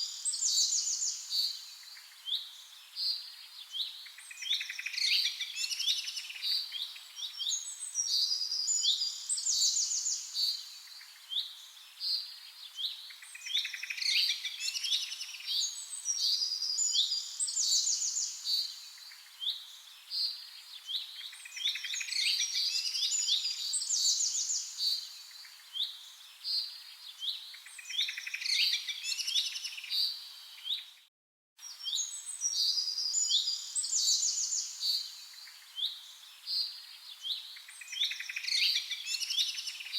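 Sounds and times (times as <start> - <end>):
songbirds chirping and singing: 0.1 - 31.0.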